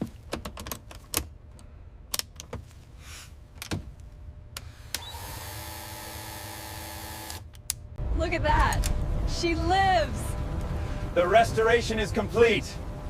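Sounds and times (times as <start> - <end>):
motor humming and whining: 4.6 - 7.6.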